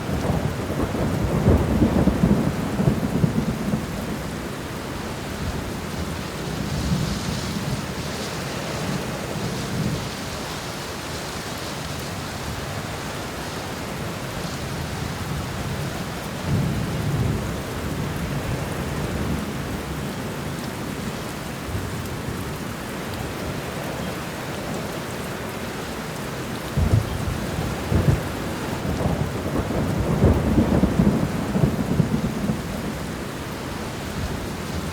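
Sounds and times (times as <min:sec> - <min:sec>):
rain against a window: 0:00.0 - 0:34.9
thunder rolling: 0:26.8 - 0:33.2.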